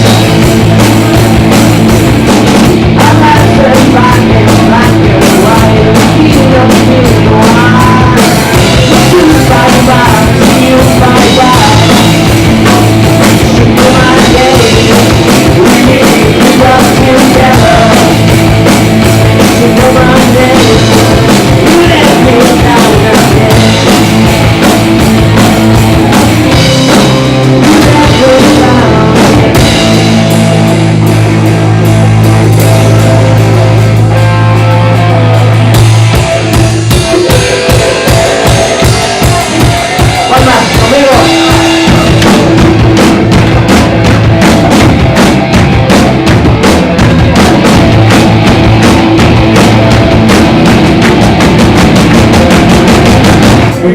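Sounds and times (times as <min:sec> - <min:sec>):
bass steady low note: 0:00.0 - 0:37.3
drum kit: 0:00.0 - 0:53.9
garage rock band playing live: 0:00.0 - 0:53.9.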